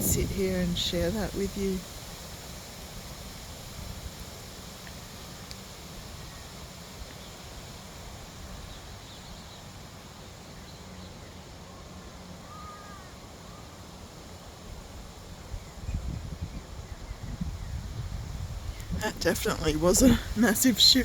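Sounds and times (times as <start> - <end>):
wind rumbling on microphone: 0.0 - 9.0, 14.7 - 21.0
faint bird calls: 11.7 - 14.0
crow-like caw: 12.4 - 13.6.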